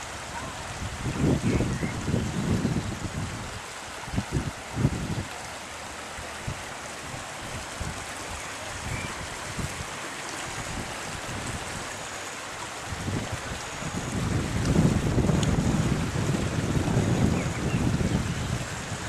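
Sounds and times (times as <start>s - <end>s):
floodwater rushing in creek: 0.0s - 19.0s
wind thumps on microphone: 14.0s - 19.0s.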